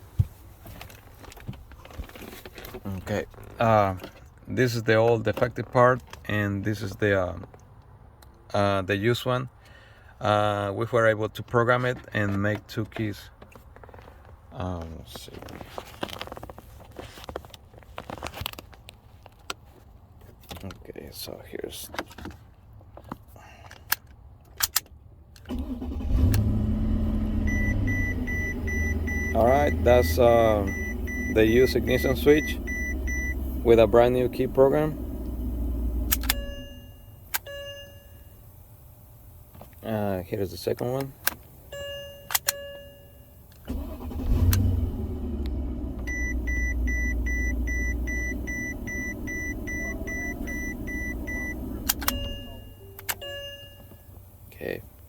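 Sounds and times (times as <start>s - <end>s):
car engine starting and idling: 25.4s - 55.0s
dashboard chime beeping: 27.5s - 34.7s, 36.2s - 38.4s, 41.7s - 43.4s, 46.1s - 54.2s
ignition switch clicks: 27.5s - 38.0s, 42.1s - 42.8s, 43.6s - 54.0s.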